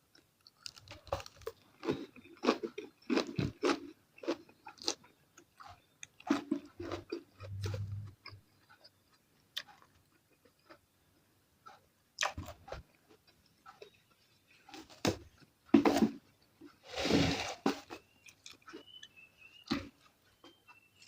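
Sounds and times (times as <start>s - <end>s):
person chewing food: 0.0s - 21.0s
brief low hum: 7.5s - 8.2s.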